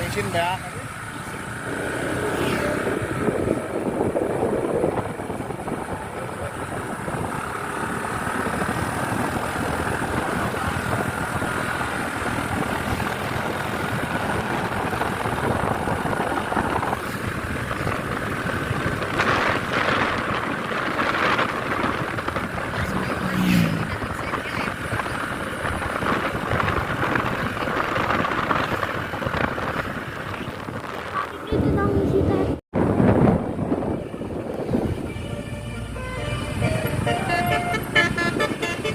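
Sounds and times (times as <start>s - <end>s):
bus engine and road noise: 0.0s - 38.9s
rushes of noise: 0.0s - 38.9s.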